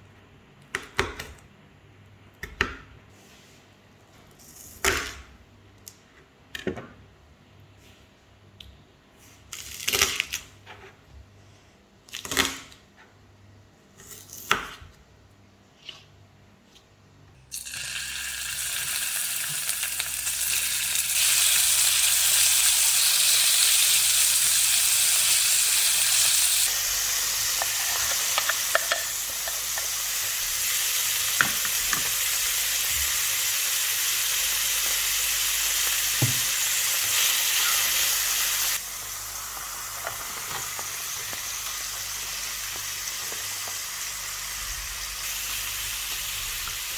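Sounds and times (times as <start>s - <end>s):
food sizzling in a hot pan: 17.5s - 46.9s.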